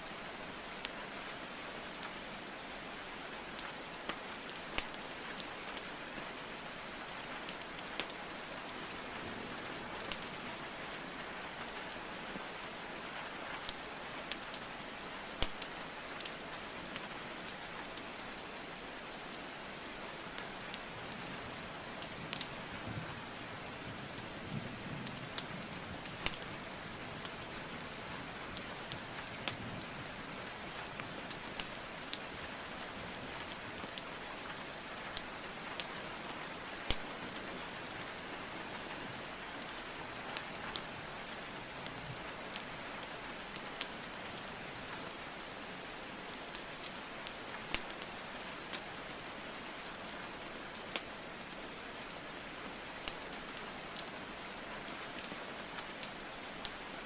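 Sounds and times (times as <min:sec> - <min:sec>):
rainfall hiss: 0:00.0 - 0:57.0
wood fire crackling and popping: 0:03.5 - 0:05.5, 0:07.5 - 0:08.2, 0:10.0 - 0:10.2, 0:15.4 - 0:16.8, 0:22.0 - 0:22.5, 0:25.1 - 0:26.5, 0:30.8 - 0:32.3, 0:33.3 - 0:34.1, 0:35.1 - 0:38.2, 0:46.5 - 0:48.9, 0:50.4 - 0:51.6, 0:53.0 - 0:53.3.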